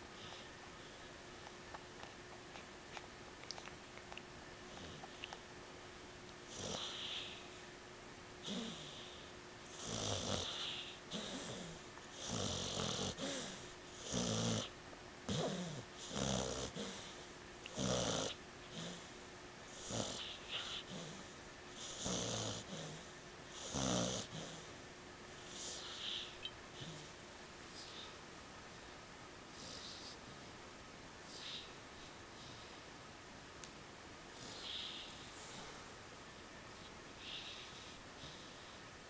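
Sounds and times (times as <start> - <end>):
dog snoring: 4.7 - 5.2, 6.5 - 7.6, 8.4 - 14.7, 15.3 - 19.1, 19.7 - 24.7, 25.4 - 27.1, 29.5 - 30.4, 31.2 - 32.8, 34.4 - 35.8, 37.2 - 38.8.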